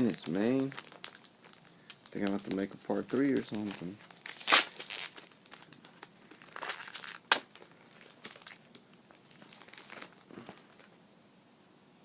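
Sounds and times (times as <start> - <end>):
card pack wrapper crinkling: 0.0 - 11.0
wrapper sharp snap: 6.6 - 7.6.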